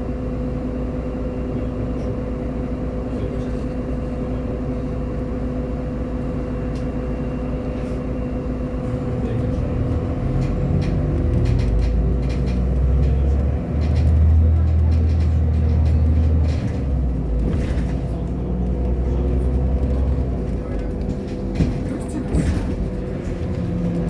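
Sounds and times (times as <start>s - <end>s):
bus engine humming: 0.0s - 24.0s.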